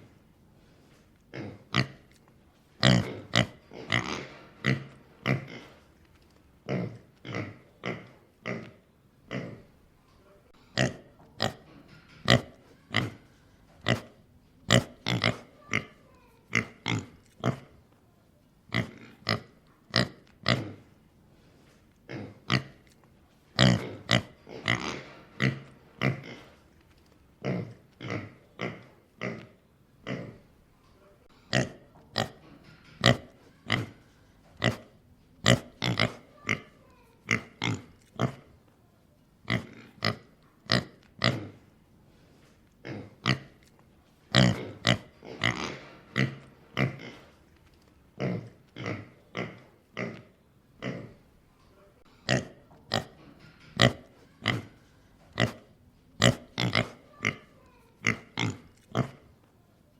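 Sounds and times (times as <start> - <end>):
pig grunting: 1.3 - 2.1, 2.8 - 5.9, 6.6 - 9.7, 14.7 - 17.7, 23.6 - 26.6, 27.4 - 30.5, 34.6 - 38.5, 44.3 - 47.4, 48.2 - 51.2, 52.2 - 59.3.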